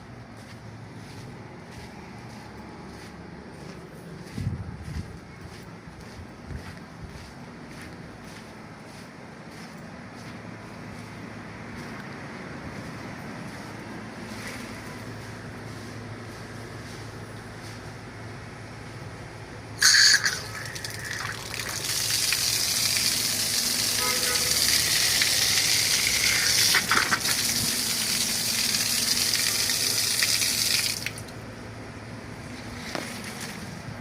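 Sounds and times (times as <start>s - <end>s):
water gushing from tap: 19.8s - 31.3s.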